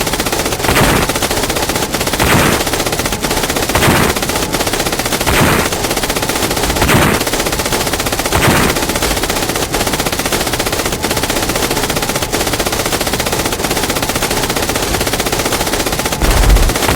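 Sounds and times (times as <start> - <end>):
rapid machine-gun fire: 0.0 - 16.9
loud bangs: 16.2 - 16.9.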